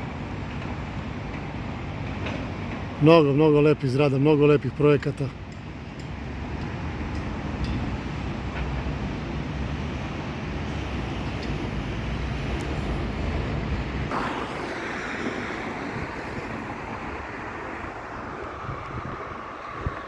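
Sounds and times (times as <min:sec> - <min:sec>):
traffic noise: 0:00.0 - 0:20.0
wind rumbling on microphone: 0:06.2 - 0:20.0.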